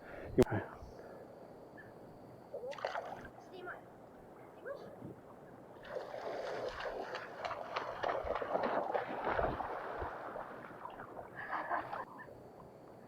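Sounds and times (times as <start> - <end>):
creek water sloshing: 2.6 - 3.4, 5.8 - 12.0.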